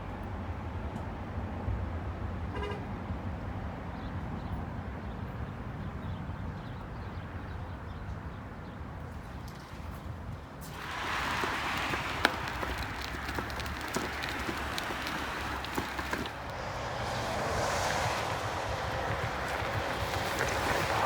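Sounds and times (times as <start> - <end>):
short horn toot: 2.5 - 2.9.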